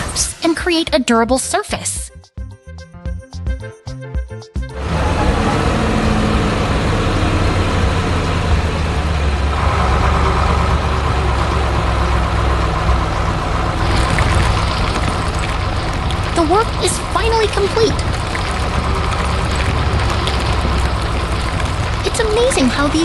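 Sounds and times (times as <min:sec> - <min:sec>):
heavy truck engine rumbling: 0:04.7 - 0:23.0.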